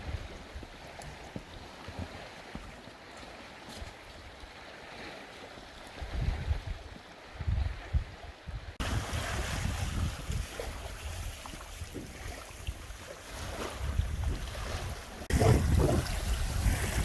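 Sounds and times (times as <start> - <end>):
wind buffeting microphone: 5.9 - 17.0.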